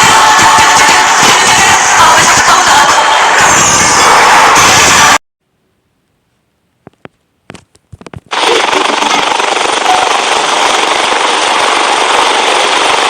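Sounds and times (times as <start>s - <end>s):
harsh continuous rattling: 7.5s - 13.0s.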